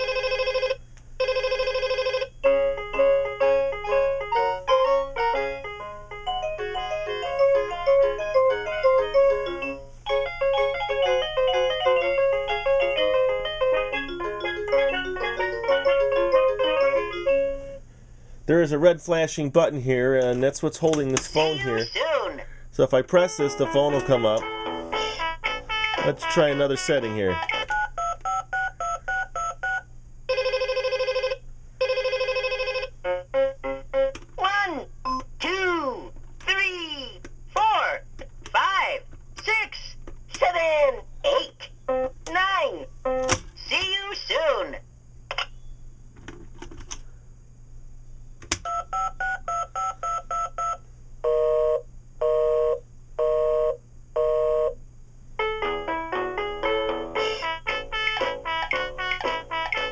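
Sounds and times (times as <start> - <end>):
phone ring tones: 0.0 - 2.6, 27.1 - 33.0, 48.6 - 54.8, 58.2 - 59.9
trilling electronic ringing: 0.0 - 2.6, 27.3 - 33.2
toy phone dialing beeps: 27.4 - 32.9, 48.6 - 50.8.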